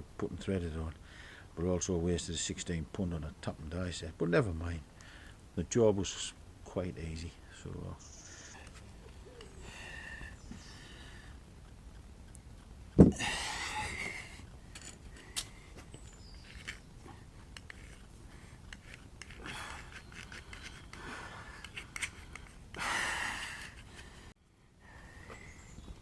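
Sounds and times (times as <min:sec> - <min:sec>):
heavy breathing: 0:08.2 - 0:11.4, 0:13.1 - 0:14.5, 0:19.4 - 0:25.6
small clicks and scrapes: 0:14.0 - 0:22.8, 0:23.6 - 0:24.2.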